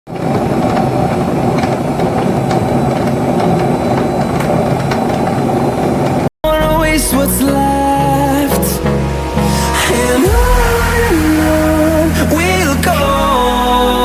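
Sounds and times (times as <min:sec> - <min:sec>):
washing machine running: 0:00.1 - 0:06.3.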